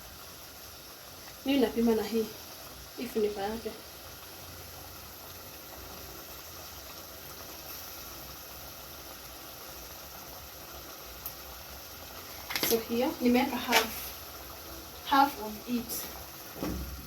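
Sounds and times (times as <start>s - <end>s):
food sizzling in oil: 0.0s - 17.0s.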